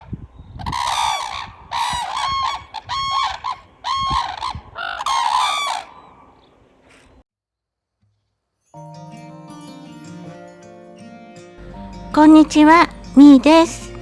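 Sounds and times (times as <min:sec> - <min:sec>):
cranes calling: 0:00.6 - 0:07.2.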